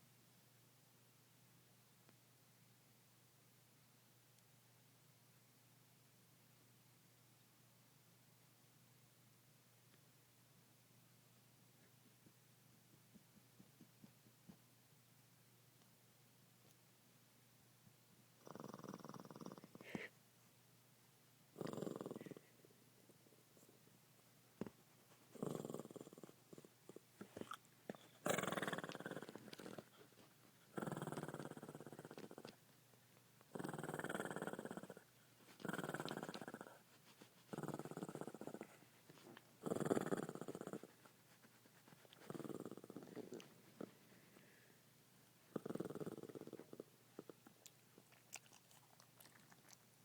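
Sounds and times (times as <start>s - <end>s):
dog snoring: 18.4s - 20.1s, 21.6s - 22.5s, 25.4s - 30.0s, 30.7s - 32.6s, 33.5s - 35.0s, 35.6s - 36.8s, 37.5s - 38.8s, 39.6s - 41.0s, 42.2s - 43.9s, 45.5s - 47.4s
dog snorting: 21.6s - 22.5s, 25.3s - 32.6s, 33.5s - 44.2s, 45.5s - 49.8s.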